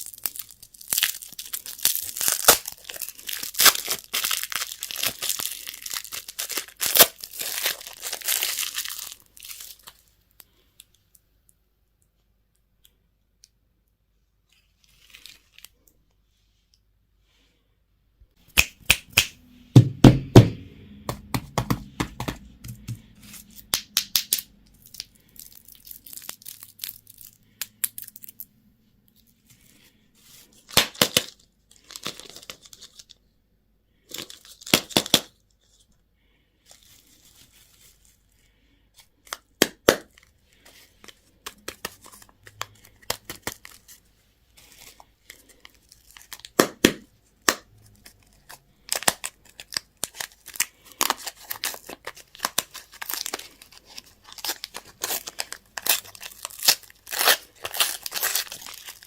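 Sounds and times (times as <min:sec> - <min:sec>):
packaging being torn and crinkled: 0:00.0 - 0:10.1, 0:23.0 - 0:28.4, 0:30.6 - 0:33.2, 0:34.1 - 0:35.4, 0:39.2 - 0:44.0, 0:44.6 - 0:59.0.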